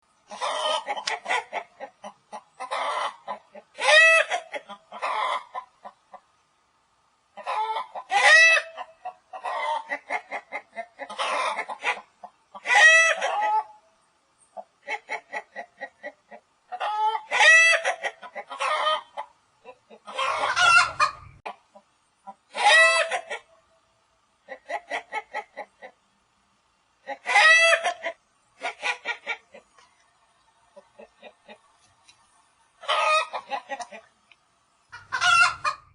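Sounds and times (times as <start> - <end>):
chicken squawk: 0.3 - 6.0, 7.4 - 13.8, 14.8 - 23.5, 27.0 - 29.6, 32.8 - 34.1, 34.9 - 35.9
chicken clucking: 0.3 - 6.4, 7.3 - 13.9, 14.5 - 23.7, 24.4 - 26.1, 27.0 - 32.0, 32.8 - 34.3, 34.9 - 35.9.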